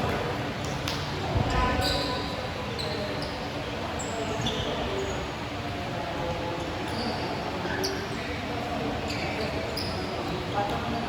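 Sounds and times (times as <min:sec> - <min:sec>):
murmur of crowd: 0:00.0 - 0:11.0
sneaker squeaks on floor: 0:01.6 - 0:03.4, 0:09.1 - 0:10.1.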